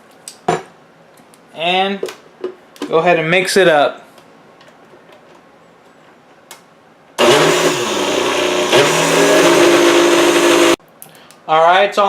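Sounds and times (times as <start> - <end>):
blender crushing ice: 7.2 - 10.8.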